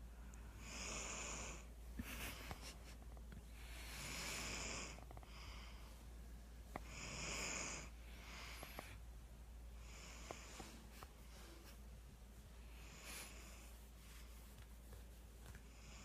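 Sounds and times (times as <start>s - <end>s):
person snoring: 0.6s - 1.7s, 3.7s - 5.7s, 6.8s - 8.7s.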